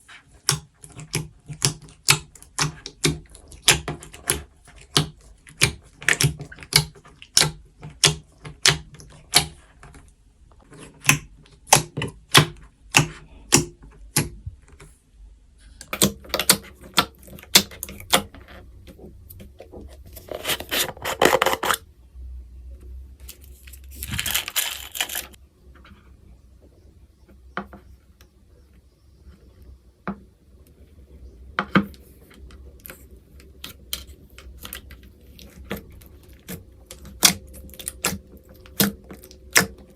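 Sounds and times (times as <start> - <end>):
slime squishing: 0.0 - 15.0, 15.6 - 21.8, 31.7 - 39.9
slime clicking and crackling: 0.4 - 9.6, 15.8 - 18.4, 32.5 - 39.9.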